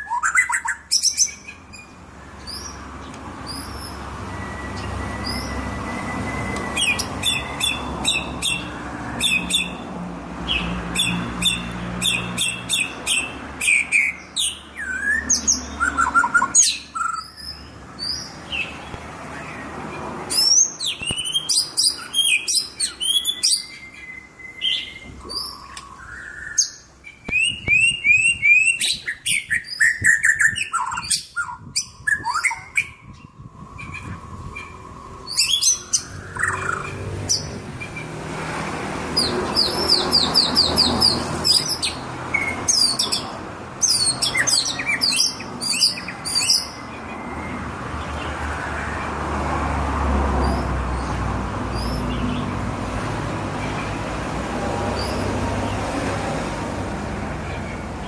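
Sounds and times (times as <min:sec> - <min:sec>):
songbird singing: 0:00.0 - 0:58.0.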